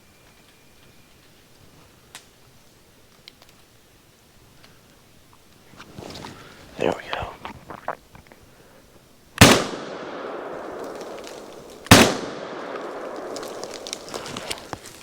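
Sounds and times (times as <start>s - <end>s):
shotgun shots: 9.4s - 14.6s
gunshot echo rolling: 9.4s - 14.7s.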